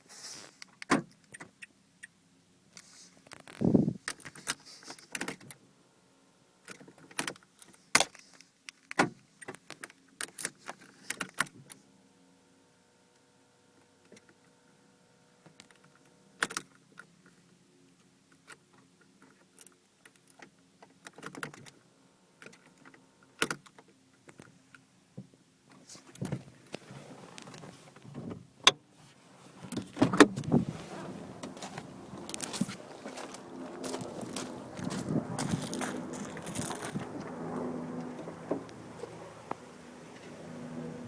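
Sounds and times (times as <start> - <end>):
faint steady hum: 28.9 - 41.0
handling noise: 29.4 - 41.0.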